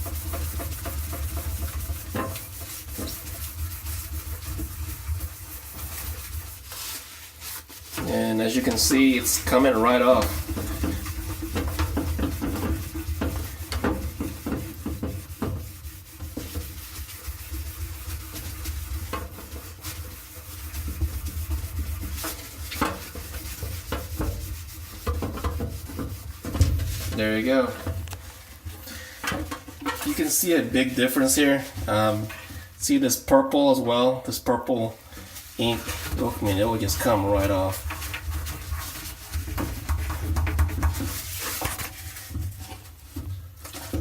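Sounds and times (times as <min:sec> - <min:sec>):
rag scrubbing metal drum: 0:00.0 - 0:44.0.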